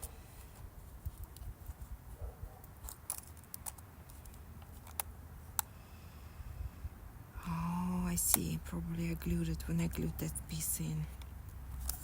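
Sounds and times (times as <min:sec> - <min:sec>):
plastic laptop parts clicking: 0:02.6 - 0:05.7.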